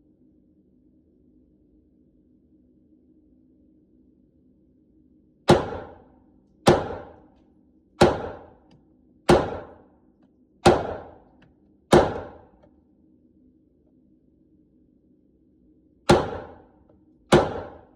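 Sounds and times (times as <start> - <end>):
pistol shots with echo: 5.5 - 6.0, 6.7 - 7.2, 8.0 - 8.6, 9.3 - 9.8, 10.7 - 11.2, 11.9 - 12.5, 16.1 - 16.6, 17.3 - 17.9.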